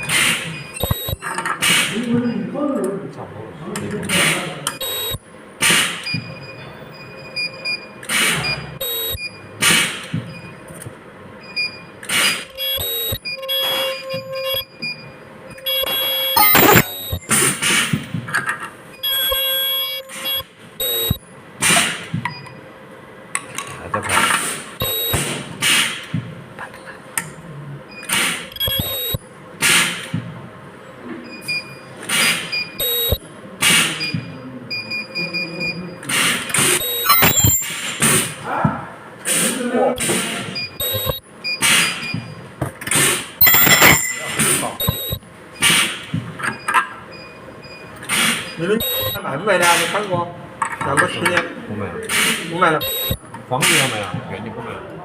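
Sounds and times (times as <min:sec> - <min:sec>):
short beeps: 0:00.0 - 0:01.2, 0:04.8 - 0:05.2, 0:08.5 - 0:09.4, 0:12.6 - 0:17.4, 0:19.0 - 0:21.2, 0:24.8 - 0:25.2, 0:28.6 - 0:29.2, 0:32.6 - 0:33.2, 0:36.8 - 0:37.8, 0:40.5 - 0:42.2, 0:43.4 - 0:45.2, 0:48.5 - 0:49.2, 0:52.8 - 0:53.2
pneumatic press air hissing: 0:05.6 - 0:06.0, 0:08.0 - 0:08.6, 0:12.0 - 0:12.5, 0:24.4 - 0:26.1, 0:41.6 - 0:42.0, 0:45.6 - 0:46.1, 0:48.1 - 0:48.5, 0:52.1 - 0:52.5
ultrasonic weld tone: 0:15.8 - 0:17.6.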